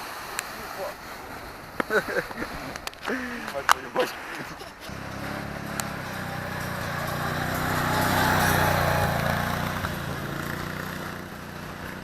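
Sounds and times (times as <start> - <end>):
vehicle engine passing by: 4.9 - 12.0.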